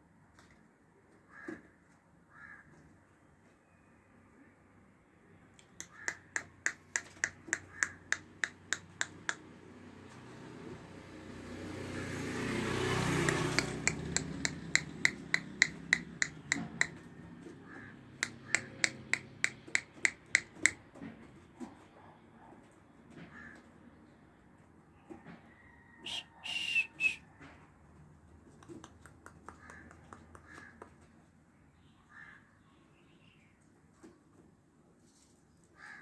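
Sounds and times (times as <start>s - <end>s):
sharp evenly spaced clicks: 5.6s - 9.5s, 13.2s - 17.1s, 18.2s - 20.8s.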